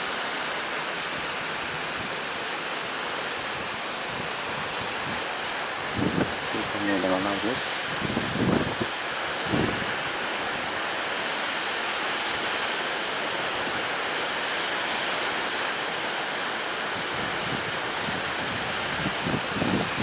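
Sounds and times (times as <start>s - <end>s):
sea surf rushing: 0.0s - 20.0s
strong wind: 0.8s - 11.4s, 15.4s - 20.0s.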